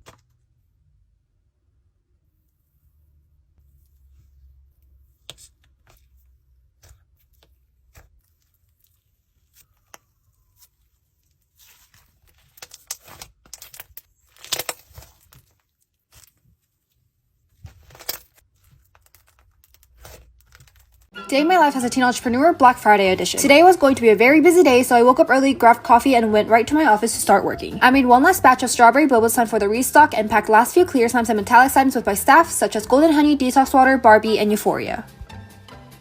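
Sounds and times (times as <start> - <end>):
crinkling and tearing handling noises: 5.2 - 21.2.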